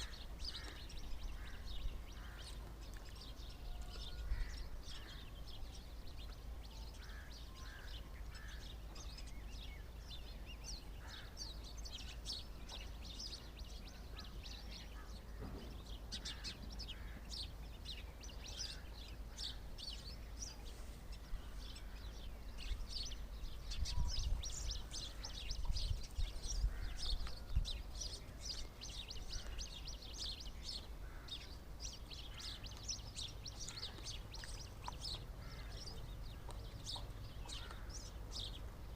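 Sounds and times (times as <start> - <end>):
small birds chirping: 0.0 - 38.9
low wind rumble: 14.9 - 32.6.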